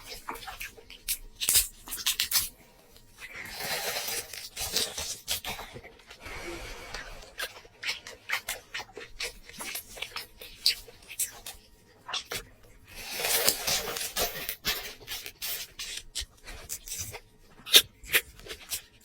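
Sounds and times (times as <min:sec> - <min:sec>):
eating clicks and smacks: 0:00.0 - 0:03.1, 0:07.4 - 0:19.0
rustling tearing noise: 0:00.0 - 0:19.0.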